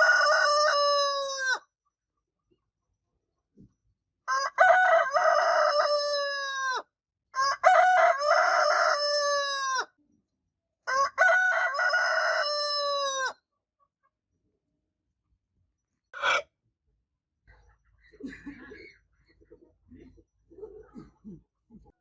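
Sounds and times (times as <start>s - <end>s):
rooster crowing: 0.0s - 1.6s, 4.3s - 6.8s, 7.4s - 9.9s, 10.8s - 13.4s, 16.2s - 16.4s.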